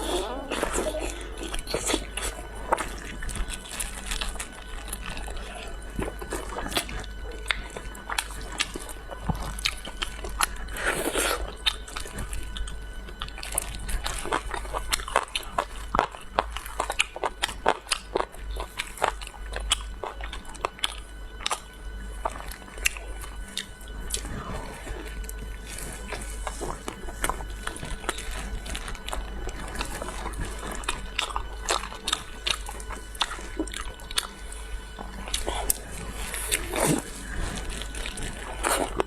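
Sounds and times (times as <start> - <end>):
chewing crunchy food: 0.0 - 39.0
rustling noise: 23.4 - 39.0.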